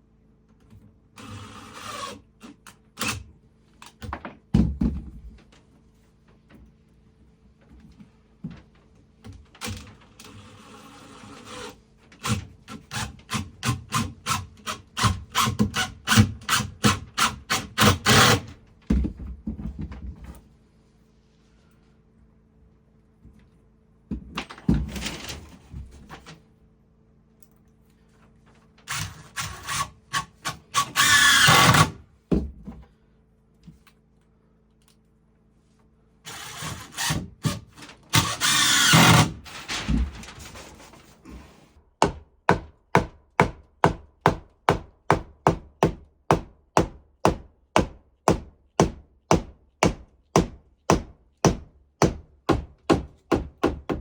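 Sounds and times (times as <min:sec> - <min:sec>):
carpentry tool noise: 0:09.6 - 0:19.0, 0:28.2 - 0:32.0, 0:36.2 - 0:41.8
steady hammering: 0:42.0 - 0:54.0.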